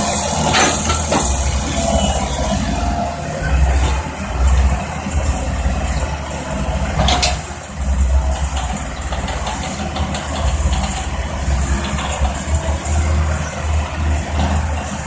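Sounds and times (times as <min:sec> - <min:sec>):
diesel engine rumbling: 0:00.0 - 0:15.0
metal clank: 0:00.1 - 0:02.6.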